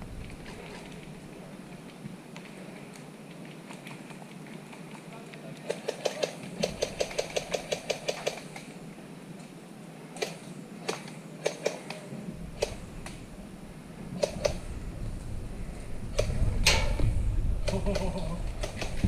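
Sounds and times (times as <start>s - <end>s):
low rumble: 0.0s - 1.8s, 12.2s - 19.0s
airsoft guns firing: 5.7s - 8.7s.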